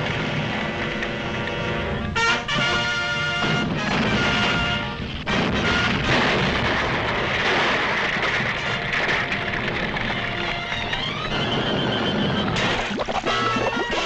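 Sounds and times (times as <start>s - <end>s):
orchestral music: 0.0s - 6.1s
rumbling roar of explosions: 0.0s - 14.0s.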